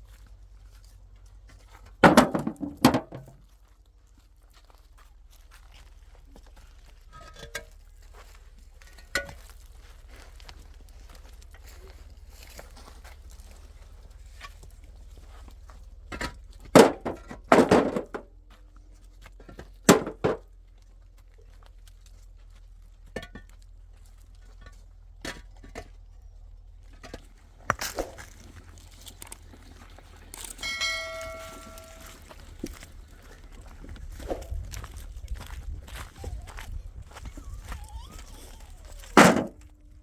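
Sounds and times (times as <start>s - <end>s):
objects knocking and clattering: 1.9s - 3.4s, 16.1s - 18.3s, 19.4s - 20.5s, 30.4s - 32.3s, 39.1s - 39.7s
struck metal object ringing: 30.6s - 32.3s.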